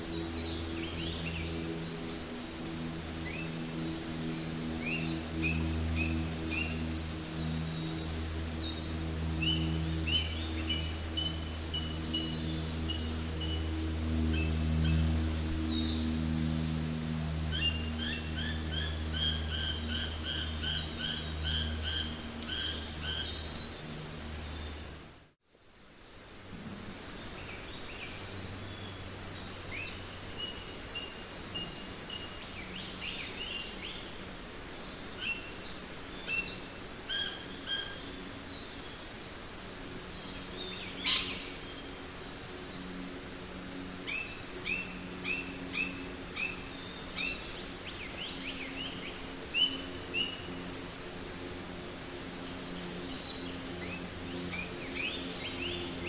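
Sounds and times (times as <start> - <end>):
low hum: 0.0 - 56.0
birds chirping and whistling: 3.2 - 13.7, 44.1 - 51.0.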